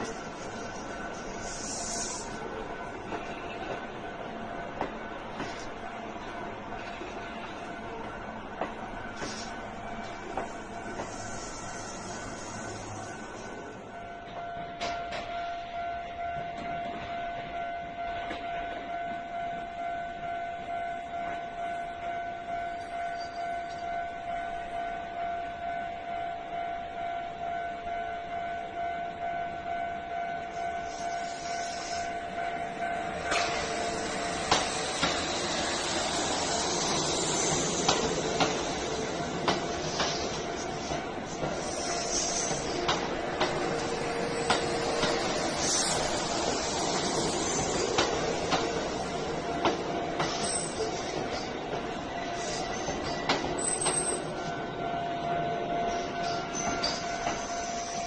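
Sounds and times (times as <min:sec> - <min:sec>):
level crossing warning bell ringing: 0:00.0 - 0:58.0
train running: 0:00.0 - 0:58.0
wheels clacking over rail joints: 0:32.8 - 0:52.0.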